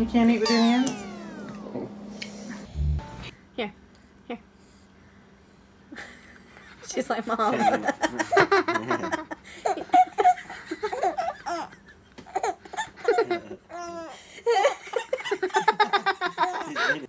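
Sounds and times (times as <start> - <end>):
people laughing: 7.4 - 12.0, 13.0 - 13.6, 14.5 - 17.0
baby giggling: 8.8 - 17.0.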